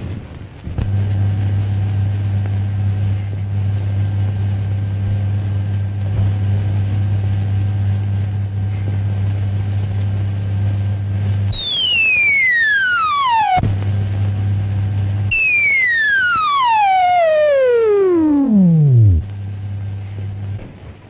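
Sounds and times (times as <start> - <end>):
low electrical hum: 0.0 - 21.0
high whistle sliding downward: 11.6 - 13.6, 15.3 - 19.3.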